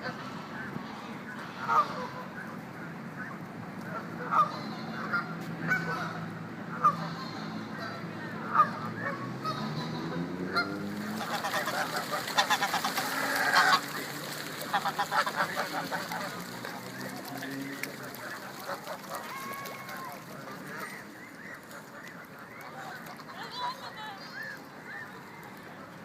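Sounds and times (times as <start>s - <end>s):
geese honking: 0.0s - 25.3s.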